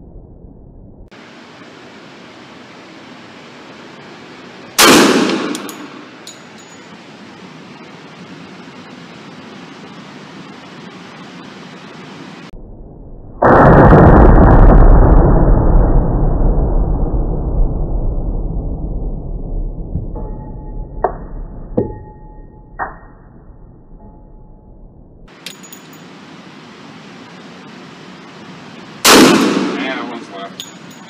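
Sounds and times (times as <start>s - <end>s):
loud steady rushing noise: 1.1s - 12.5s, 25.3s - 31.0s
pistol shot with ringing tail: 4.8s - 6.1s, 29.0s - 30.2s.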